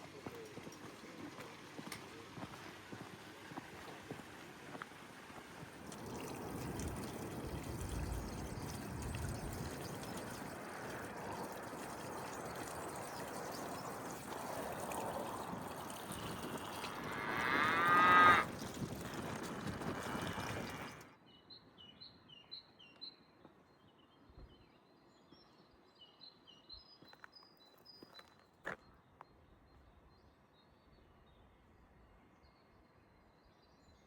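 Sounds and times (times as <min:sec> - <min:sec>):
stream water rushing: 0:03.2 - 0:21.1
cow mooing: 0:16.8 - 0:18.5.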